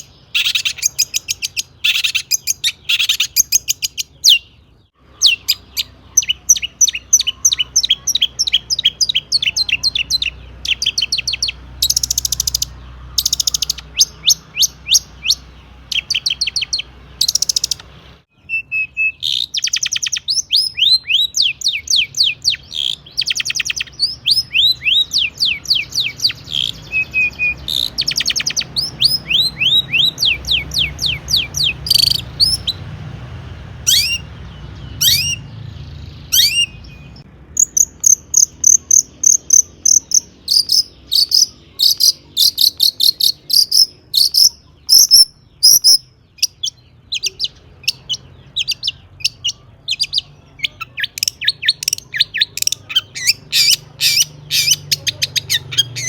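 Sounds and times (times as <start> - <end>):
shrike singing chirps: 0.0 - 56.0.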